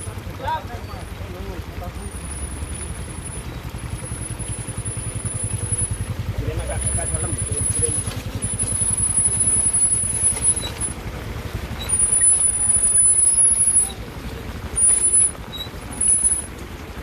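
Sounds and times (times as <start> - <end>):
small motorcycle engines running: 0.0 - 17.0
high-pitched squeal: 14.8 - 16.5.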